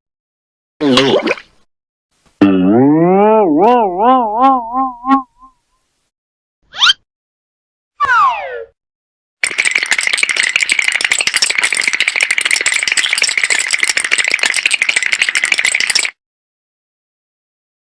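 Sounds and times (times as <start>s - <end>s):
cartoon rattle: 9.4s - 16.2s.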